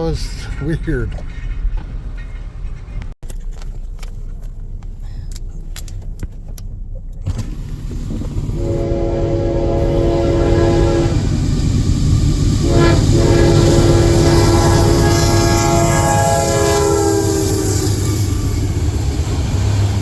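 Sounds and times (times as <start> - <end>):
low steady rumble: 0.2 - 17.4
locomotive air horn: 8.4 - 11.8, 12.4 - 18.7.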